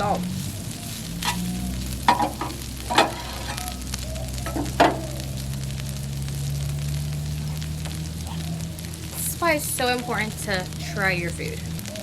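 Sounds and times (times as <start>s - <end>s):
meat sizzling on a griddle: 0.0s - 12.0s
spatula knocking on griddle: 2.1s - 3.6s.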